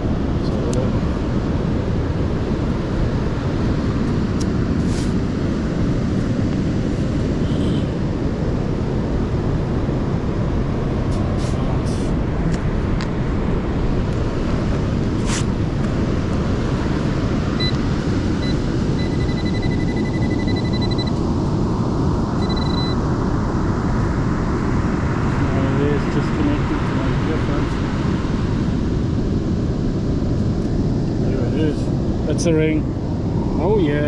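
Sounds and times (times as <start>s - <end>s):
storm wind: 0.0s - 34.0s
metal detector beeping: 17.6s - 17.8s, 18.4s - 21.2s, 22.4s - 23.0s.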